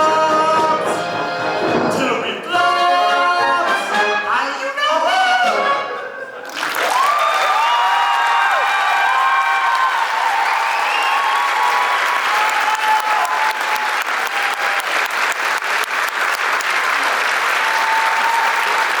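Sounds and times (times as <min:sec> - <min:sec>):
audience applauding: 0:06.3 - 0:19.0.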